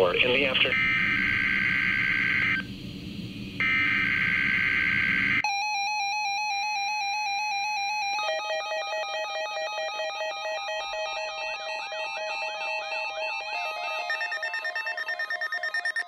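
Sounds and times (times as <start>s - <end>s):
buzzy electronic alert beep: 11.2s - 16.0s
screechy digital data tones: 11.3s - 16.0s.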